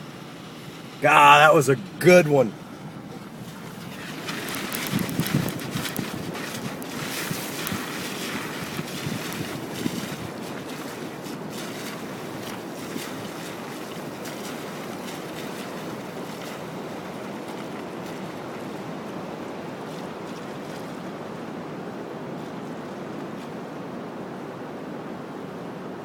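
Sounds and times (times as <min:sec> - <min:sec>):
ocean surf washing on beach: 0:00.0 - 0:26.0
wind on microphone: 0:03.2 - 0:19.1
faint crackles: 0:03.4 - 0:10.9.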